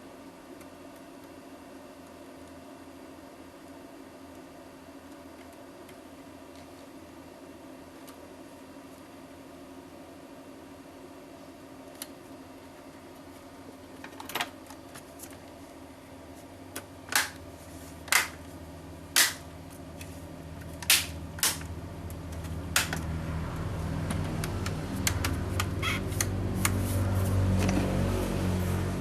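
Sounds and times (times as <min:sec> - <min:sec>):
low hum: 0:18.6 - 0:29.0.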